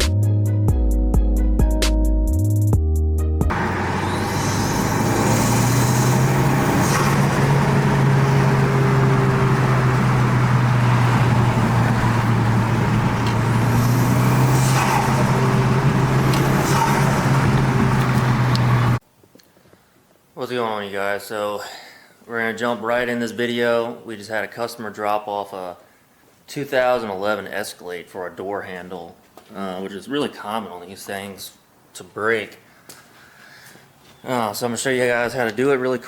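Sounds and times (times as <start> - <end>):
broad rushing noise: 3.5 - 19.0
vehicle engine hum: 3.5 - 19.0.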